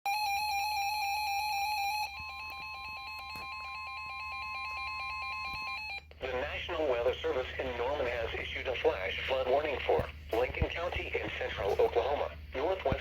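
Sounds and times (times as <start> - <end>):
pulsing electronic alarm tone: 0.1 - 6.1.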